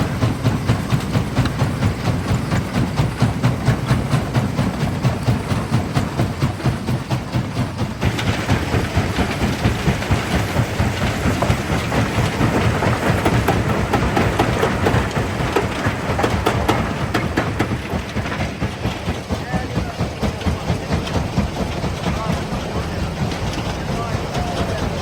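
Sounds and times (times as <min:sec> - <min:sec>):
crusher low rumble: 0:00.0 - 0:25.0.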